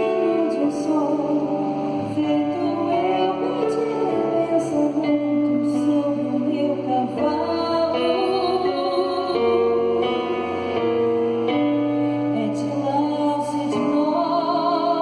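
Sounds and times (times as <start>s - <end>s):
person singing: 0.0s - 15.0s
slow gentle music: 0.0s - 15.0s.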